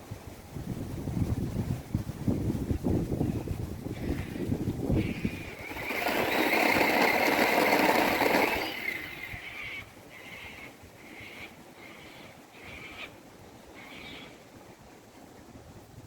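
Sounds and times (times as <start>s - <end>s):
high chirring: 5.0s - 9.5s
motor engine passing by: 5.4s - 9.5s.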